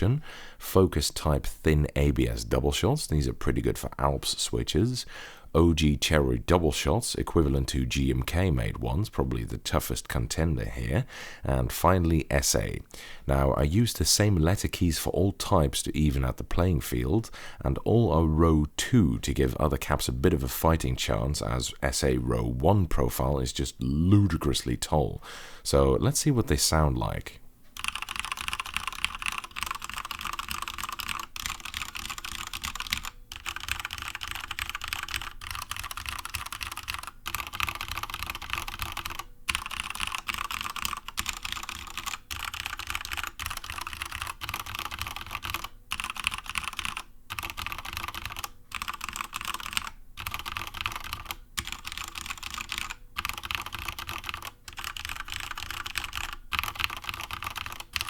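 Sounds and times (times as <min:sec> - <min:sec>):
mechanical keyboard typing: 0:27.8 - 0:58.0.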